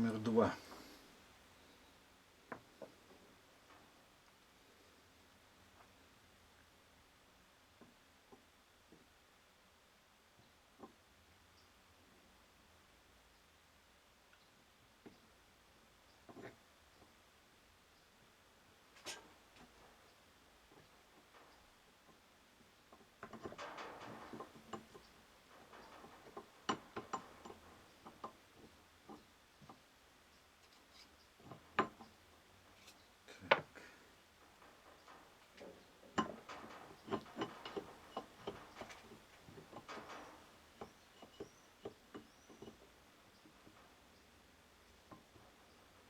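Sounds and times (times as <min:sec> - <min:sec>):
rustling of handled parts: 0:18.9 - 0:46.0.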